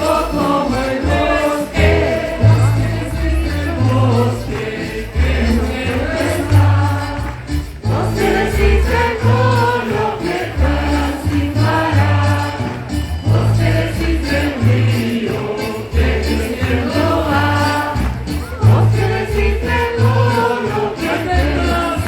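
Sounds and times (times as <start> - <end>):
instrumental accompaniment: 0.0 - 22.0
mass choir singing: 0.0 - 22.0.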